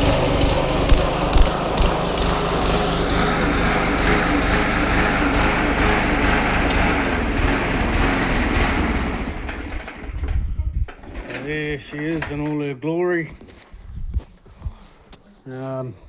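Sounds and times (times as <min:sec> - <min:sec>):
lawnmower engine running: 0:00.0 - 0:12.4.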